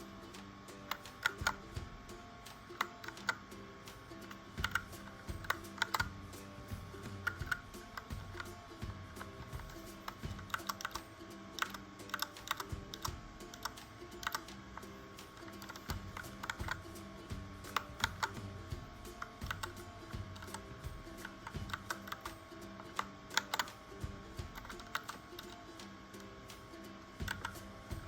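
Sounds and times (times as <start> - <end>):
faint background music: 0.0 - 28.0
mechanical keyboard clicks: 0.9 - 1.8, 2.7 - 3.4, 4.2 - 6.1, 7.0 - 8.5, 9.2 - 11.0, 11.6 - 14.5, 15.5 - 16.8, 17.7 - 18.4, 19.2 - 23.8, 24.4 - 25.6, 27.2 - 27.7.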